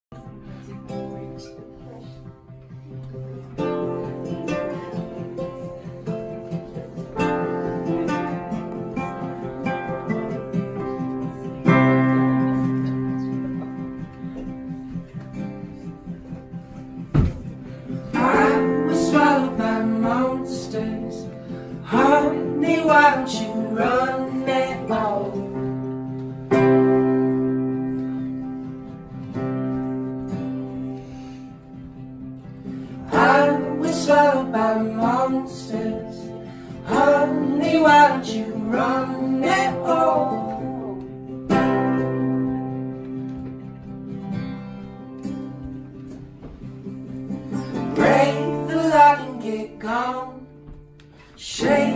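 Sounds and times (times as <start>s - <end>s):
acoustic guitar strumming chords: 0.1s - 51.9s
wordless singing: 18.0s - 25.8s, 33.0s - 42.0s, 47.7s - 50.5s, 51.3s - 51.9s.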